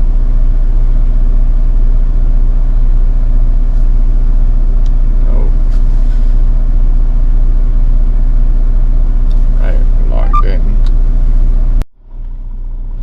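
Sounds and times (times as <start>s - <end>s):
short falling squeak: 10.2s - 10.5s.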